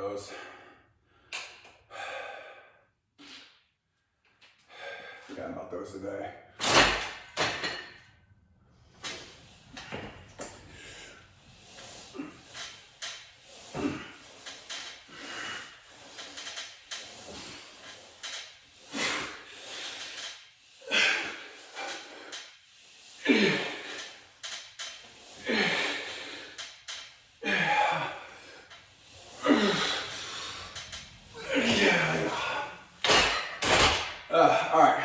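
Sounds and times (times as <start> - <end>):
man breathing hard: 0.3 - 3.6, 4.6 - 5.4, 9.7 - 35.0
cable machine sliding and knocking: 6.6 - 8.1, 8.8 - 34.3.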